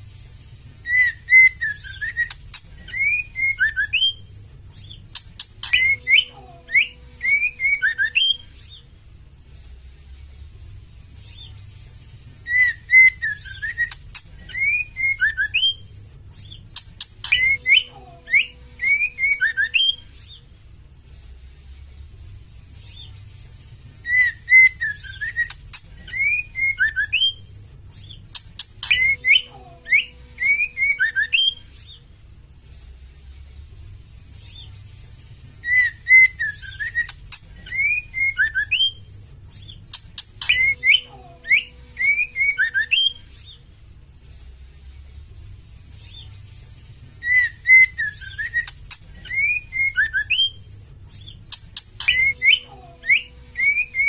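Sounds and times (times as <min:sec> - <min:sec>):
bird chirping and whistling: 0:00.2 - 0:08.9, 0:11.2 - 0:20.4, 0:22.8 - 0:32.0, 0:35.5 - 0:43.6, 0:46.0 - 0:54.0.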